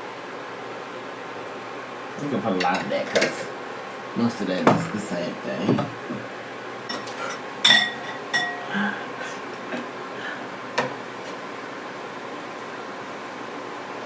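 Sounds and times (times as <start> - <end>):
kitchen utensils clinking: 2.5 - 3.5, 4.6 - 6.2, 6.9 - 8.8.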